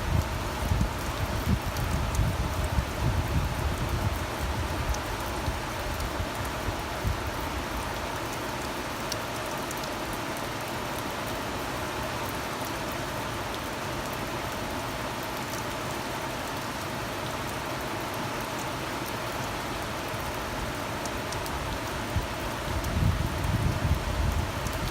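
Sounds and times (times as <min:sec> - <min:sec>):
wind buffeting microphone: 0:00.0 - 0:07.3, 0:22.1 - 0:24.9
steady rain hiss: 0:00.0 - 0:24.9.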